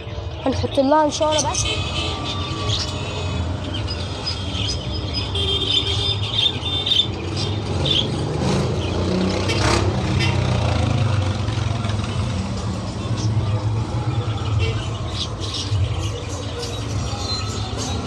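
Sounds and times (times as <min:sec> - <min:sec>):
budgerigars chirping: 0:00.5 - 0:10.3, 0:14.2 - 0:18.0.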